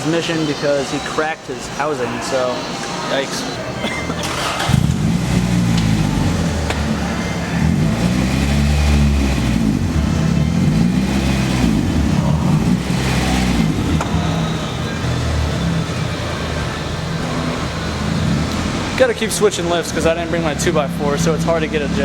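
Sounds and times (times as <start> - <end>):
car engine revving: 4.2 - 22.0.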